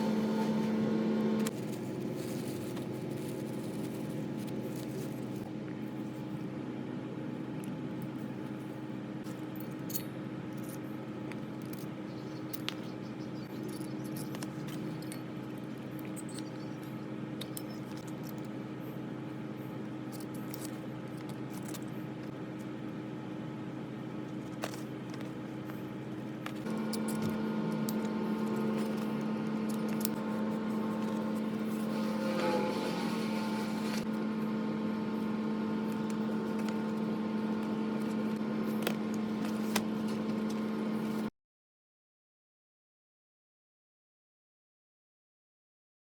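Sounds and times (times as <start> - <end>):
small lathe motor humming: 26.6 - 41.3.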